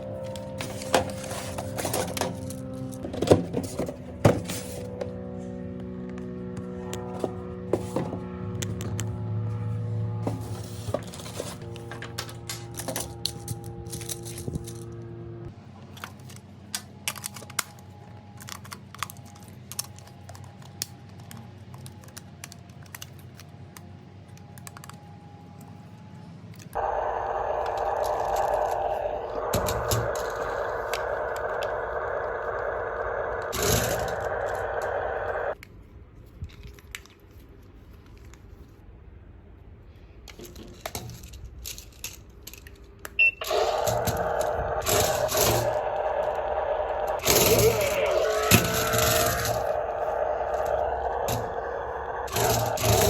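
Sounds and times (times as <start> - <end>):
toy car motors whirring: 0.0 - 5.0, 10.2 - 14.9, 26.7 - 35.6, 40.5 - 53.0
plastic clicks and rattles: 15.9 - 25.0.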